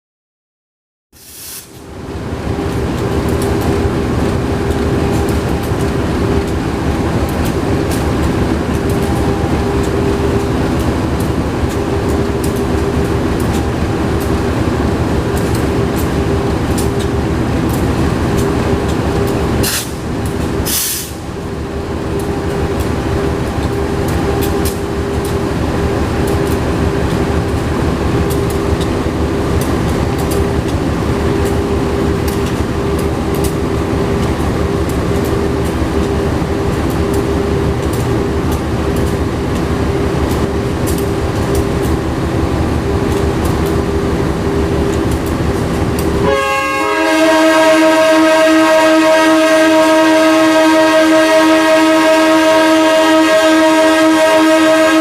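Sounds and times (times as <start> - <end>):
short hiss: 1.2 - 1.8, 20.7 - 21.2
diesel locomotive rumbling: 1.2 - 55.0.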